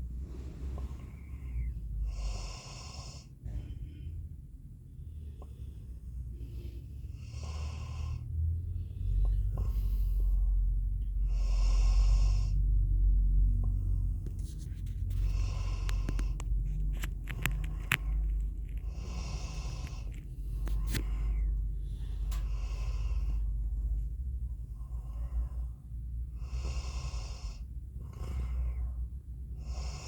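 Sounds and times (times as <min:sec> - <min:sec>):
dog snoring: 0:00.8 - 0:03.3, 0:07.2 - 0:08.3, 0:11.2 - 0:12.6, 0:15.2 - 0:16.4, 0:18.8 - 0:21.4, 0:22.4 - 0:23.4, 0:26.4 - 0:29.0, 0:29.6 - 0:30.0.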